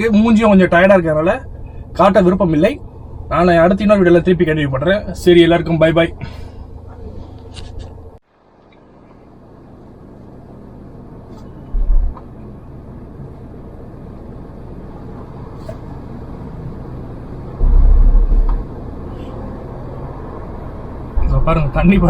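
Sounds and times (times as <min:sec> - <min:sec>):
car engine and road noise: 0:00.0 - 0:22.0
heavy low thumps: 0:11.7 - 0:12.2, 0:17.6 - 0:18.8.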